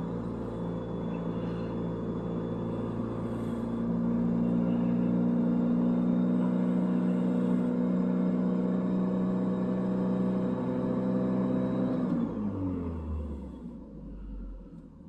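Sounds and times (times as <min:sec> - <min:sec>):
pickup engine high idle: 0:00.0 - 0:08.8
engine shutting off: 0:00.0 - 0:15.0.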